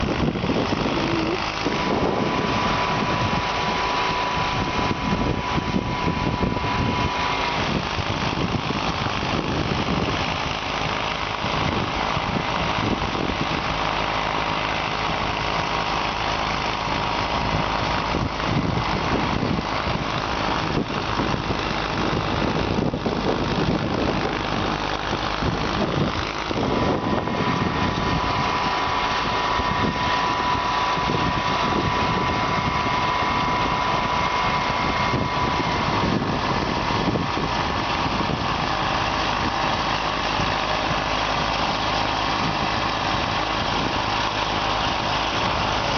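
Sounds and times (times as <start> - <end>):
high steady whine: 0.0 - 45.9
tractor engine running: 0.0 - 45.9.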